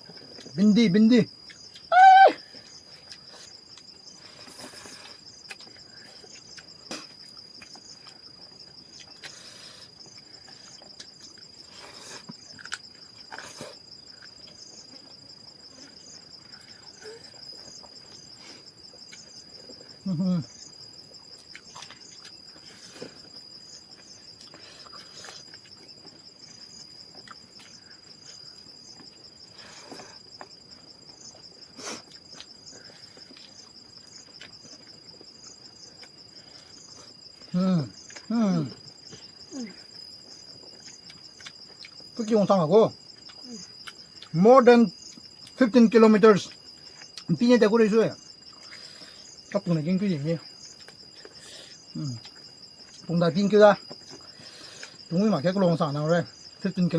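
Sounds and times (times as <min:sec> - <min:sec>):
insect trilling: 0:00.0 - 0:56.9.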